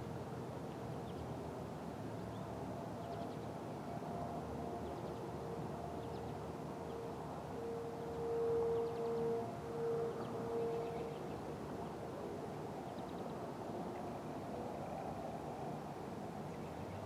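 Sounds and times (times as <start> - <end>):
distant warning siren: 5.6 - 12.8.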